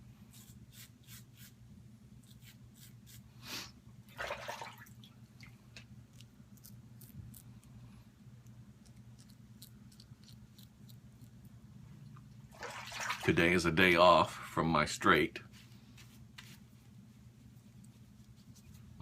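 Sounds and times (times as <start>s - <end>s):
razor scraping stubble: 0.3s - 1.6s, 2.2s - 3.2s.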